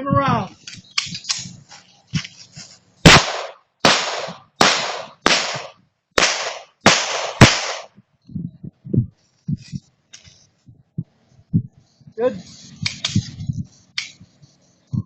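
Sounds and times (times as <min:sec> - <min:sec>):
pistol shots with echo: 0:03.0 - 0:07.9.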